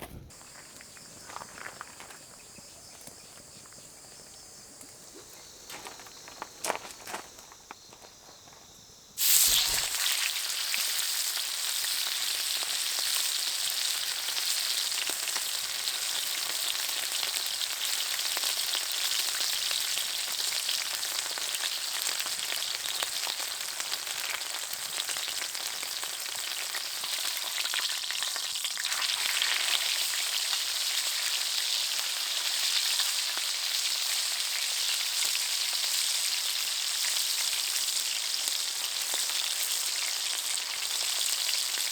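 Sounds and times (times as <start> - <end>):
food sizzling in a pan: 9.2 - 41.9.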